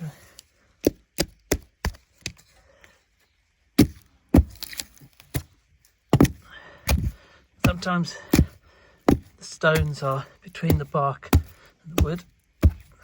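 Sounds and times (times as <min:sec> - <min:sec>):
tool striking wood: 0:06.1 - 0:10.1, 0:10.7 - 0:12.9.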